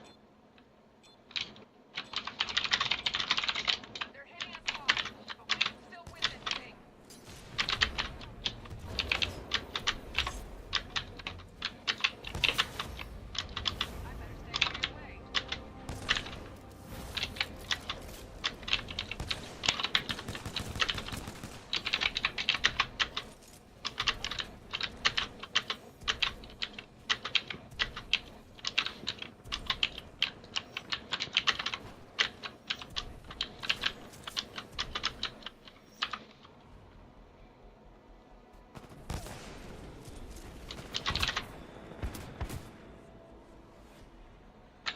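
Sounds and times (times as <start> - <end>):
mechanical keyboard typing: 1.3 - 6.7, 7.6 - 13.9, 14.5 - 36.5, 40.6 - 41.5.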